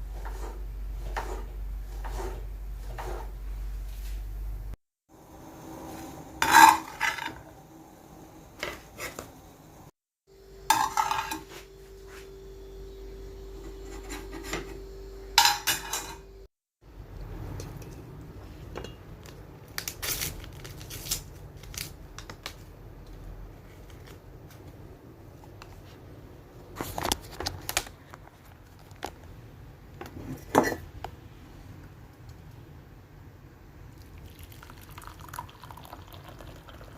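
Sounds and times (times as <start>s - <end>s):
steady hum: 0.0s - 19.6s
dishes and cutlery clinking: 10.7s - 11.6s, 15.4s - 16.3s.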